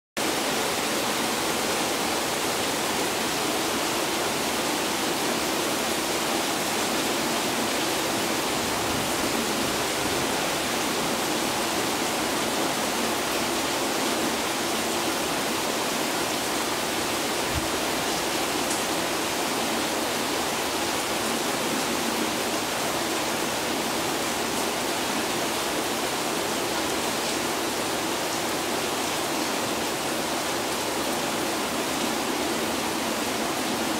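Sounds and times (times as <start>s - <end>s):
heavy rain downpour: 0.2s - 33.9s.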